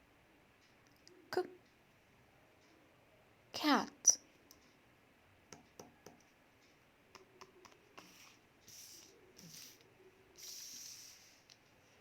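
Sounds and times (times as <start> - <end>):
soft hissy rustles: 8.0 - 12.0
faint clicks: 9.0 - 11.8.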